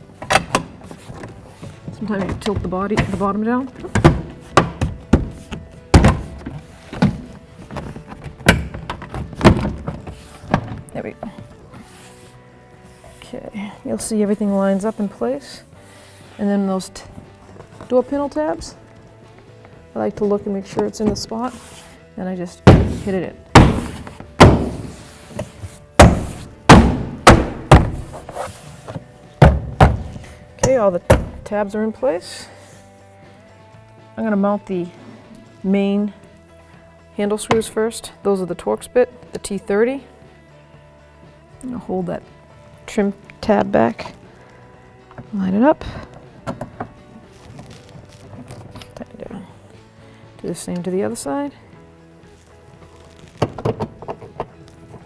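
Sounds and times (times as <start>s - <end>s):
plastic panel thunking against door: 22.7s - 25.0s, 26.0s - 28.2s, 29.4s - 30.2s.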